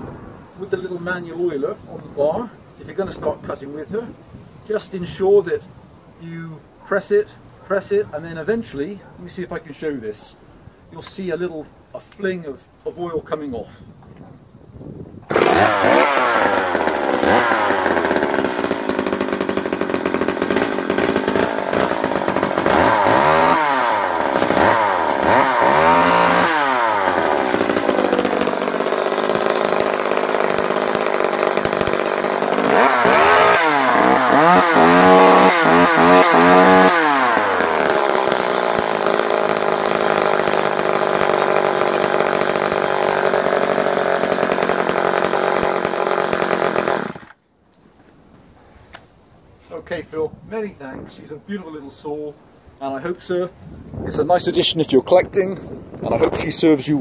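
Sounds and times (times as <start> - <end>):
chainsaw engine revving: 15.3 - 47.4.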